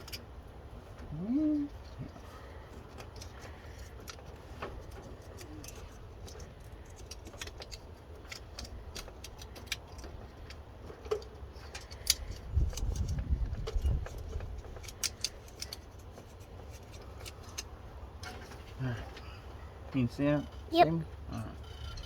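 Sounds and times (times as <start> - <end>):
wires and connectors clicking: 3.0 - 17.8.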